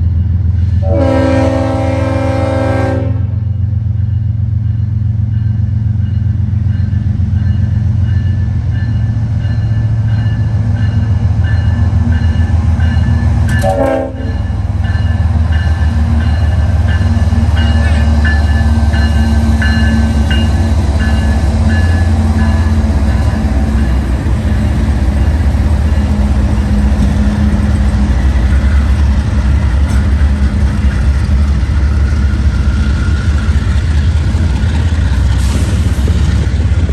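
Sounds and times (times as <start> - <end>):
locomotive air horn blasts: 0.8 - 3.4, 13.6 - 14.5.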